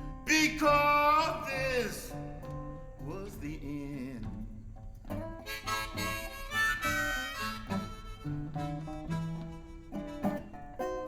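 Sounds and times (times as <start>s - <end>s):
person singing: 0.0s - 2.4s, 3.0s - 4.5s
blues harmonica wailing: 0.0s - 3.2s, 5.1s - 11.0s
guitar accompaniment: 0.0s - 11.0s.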